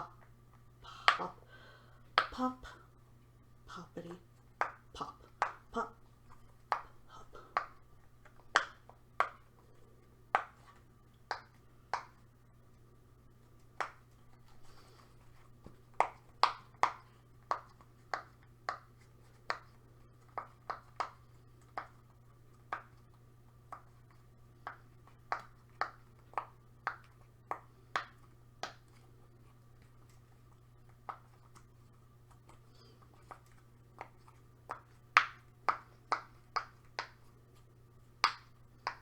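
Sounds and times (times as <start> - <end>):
pop-it toy popping: 7.5 - 9.4, 38.2 - 39.0.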